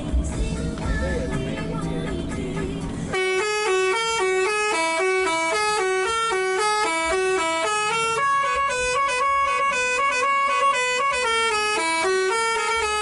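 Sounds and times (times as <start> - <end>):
multi-tone musical bus horn: 1.0 - 13.0.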